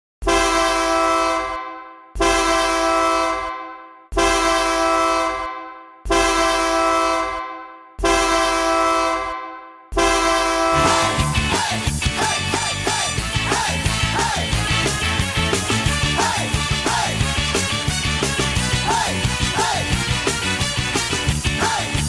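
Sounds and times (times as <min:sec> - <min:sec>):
goal horn blasting: 0:00.2 - 0:11.7.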